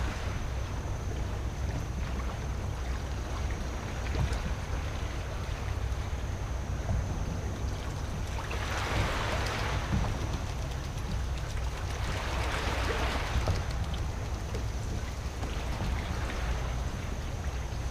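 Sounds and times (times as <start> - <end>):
water rushing: 7.6 - 17.9.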